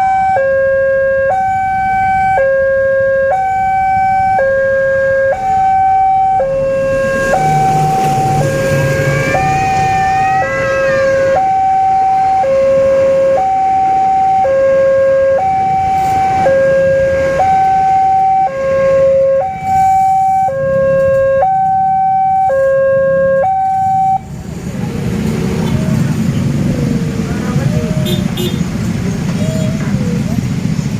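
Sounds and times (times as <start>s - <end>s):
level crossing two-tone alarm: 0.0s - 10.5s, 11.1s - 24.2s.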